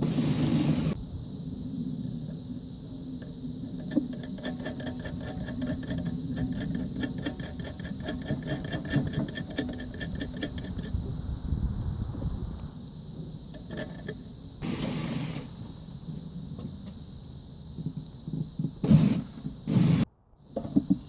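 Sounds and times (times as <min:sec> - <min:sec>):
steady low rumble: 0:00.9 - 0:03.6, 0:11.0 - 0:13.3
rapid mechanical clicking: 0:03.9 - 0:11.0.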